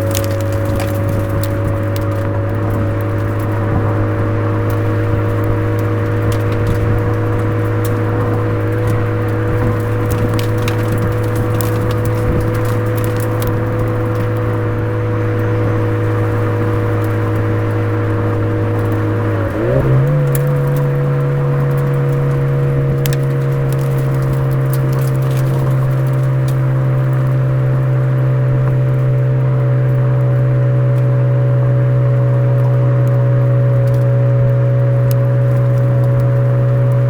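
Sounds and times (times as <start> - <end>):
car engine droning: 0.0 - 37.0.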